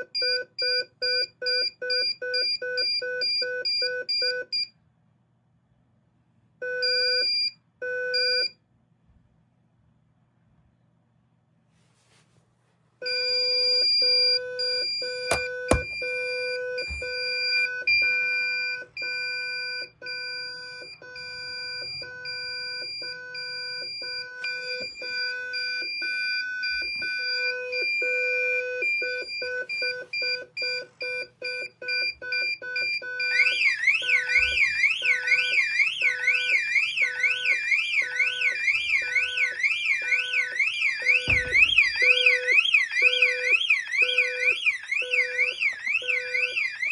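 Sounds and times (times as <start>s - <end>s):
pulsing electronic alarm tone: 13.1s - 46.9s
siren sweeping up and down: 16.8s - 46.9s.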